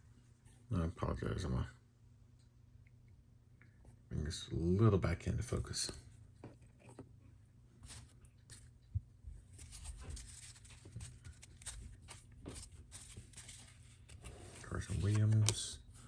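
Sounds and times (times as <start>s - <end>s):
low steady hum: 0.0s - 16.0s
cards scraping and clicking: 9.6s - 16.0s.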